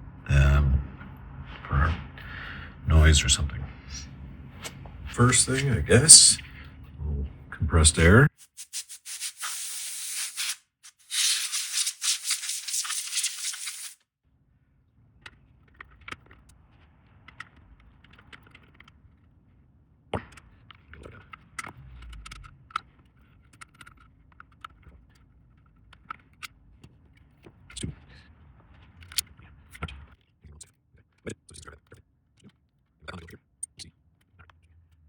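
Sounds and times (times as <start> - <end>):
compressed air hissing: 8.4 - 14.0
clicks and taps of small parts: 20.2 - 27.8.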